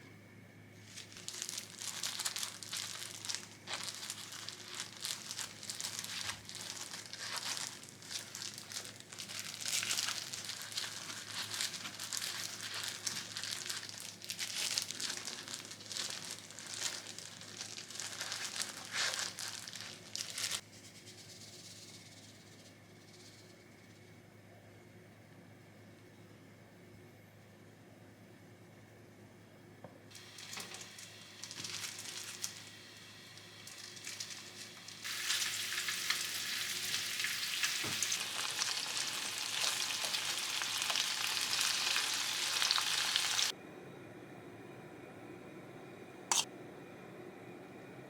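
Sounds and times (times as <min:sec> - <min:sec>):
faint steady hum: 0:00.0 - 0:48.0
crinkly material rustling: 0:00.8 - 0:21.9, 0:30.1 - 0:43.5.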